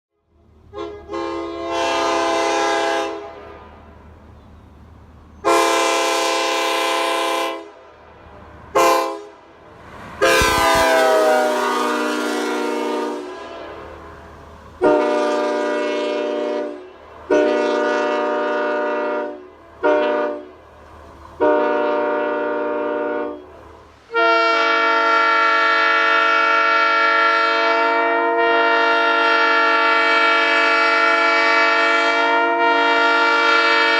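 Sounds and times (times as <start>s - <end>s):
air horn chord blasts: 5.4s - 7.7s, 8.8s - 9.3s, 10.2s - 20.5s
low hum: 9.8s - 12.1s.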